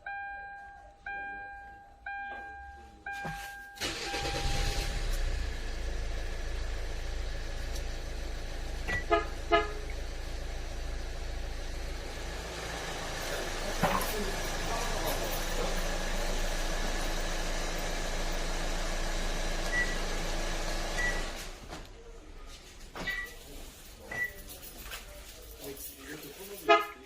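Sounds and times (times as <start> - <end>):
car engine starting and idling: 3.4 - 25.7
car horn chirps: 8.8 - 10.0, 26.6 - 27.0.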